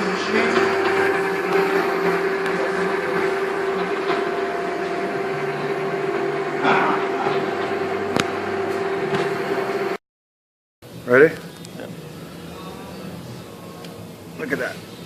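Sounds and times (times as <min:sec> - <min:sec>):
grinder humming: 0:00.0 - 0:10.0.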